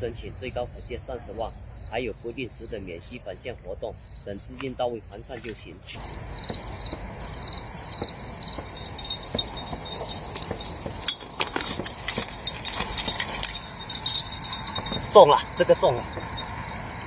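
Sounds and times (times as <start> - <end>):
crickets chirping: 0.0 - 17.0
clicks and rustling: 8.5 - 16.7.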